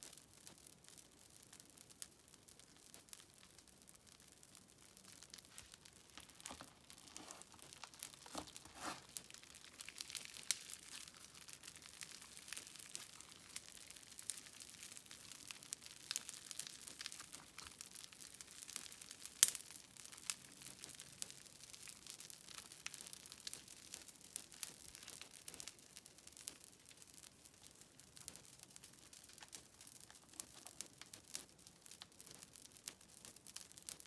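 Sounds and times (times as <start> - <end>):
crackling and popping clicks: 0.0 - 34.0
slime squished by hand: 5.4 - 14.4.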